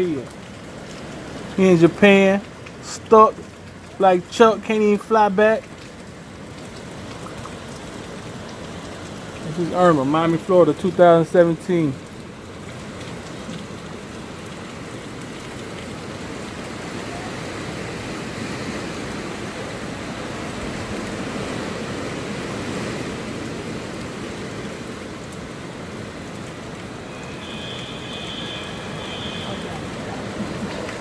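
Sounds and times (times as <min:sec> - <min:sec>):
hurricane wind and rain: 0:00.0 - 0:31.0.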